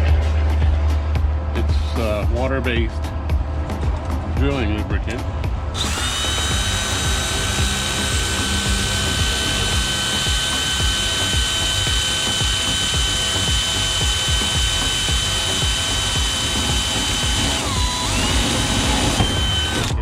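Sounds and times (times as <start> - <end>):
power drill whining: 5.8 - 20.0.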